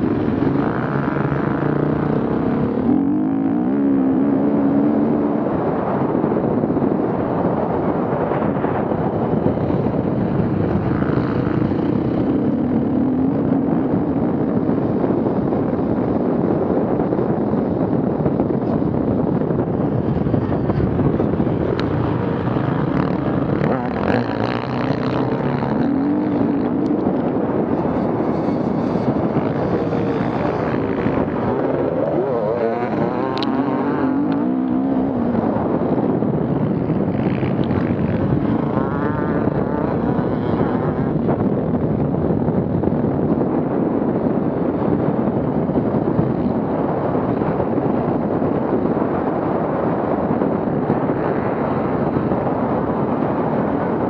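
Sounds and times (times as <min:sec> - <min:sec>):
off-road vehicle engines revving: 0:00.0 - 0:06.2, 0:07.7 - 0:14.0, 0:18.8 - 0:41.6.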